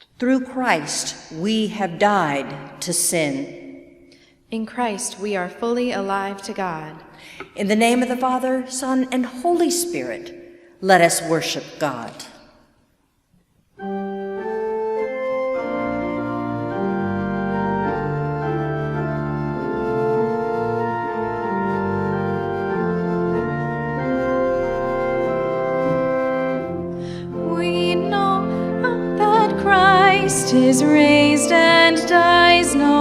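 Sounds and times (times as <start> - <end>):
organ playing held chords: 13.8 - 33.0
person singing with vibrato: 27.0 - 33.0.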